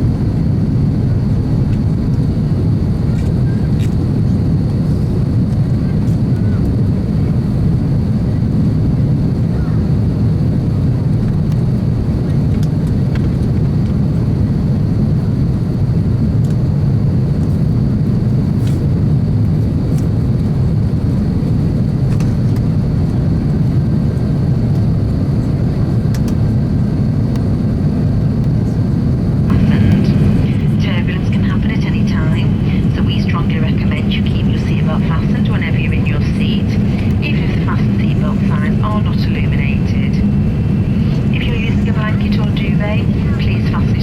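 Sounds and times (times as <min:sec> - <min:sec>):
airplane cabin rumble: 0:00.0 - 0:44.0
faint high whine: 0:29.5 - 0:44.0.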